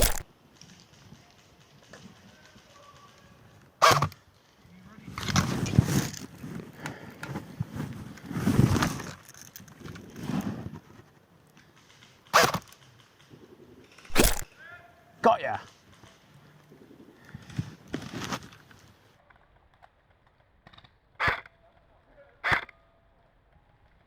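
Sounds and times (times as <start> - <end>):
airsoft rifle shots: 0.0 - 0.2, 14.1 - 14.5
rough rustling noise: 0.0 - 0.3, 13.9 - 14.5.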